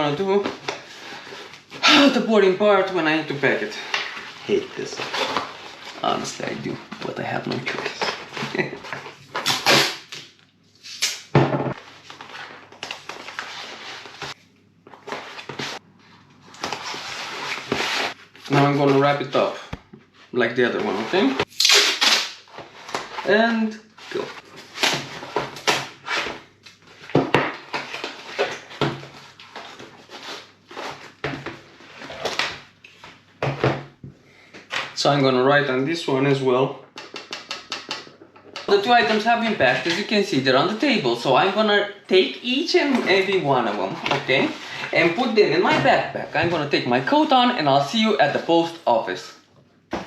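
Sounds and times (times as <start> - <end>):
paper rustling and crinkling: 11.8 - 21.4, 22.5 - 33.2.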